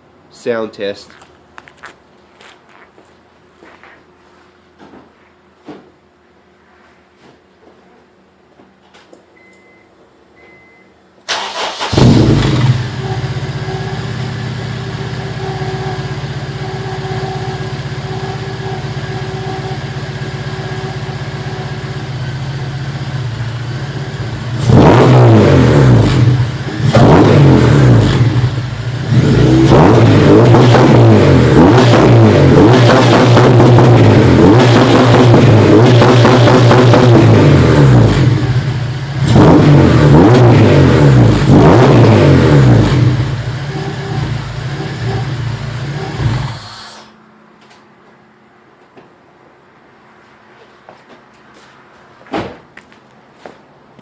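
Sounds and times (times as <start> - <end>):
car engine revving: 11.3 - 21.8, 23.3 - 46.7
car engine starting: 11.3 - 47.0
car engine idling: 42.9 - 46.7.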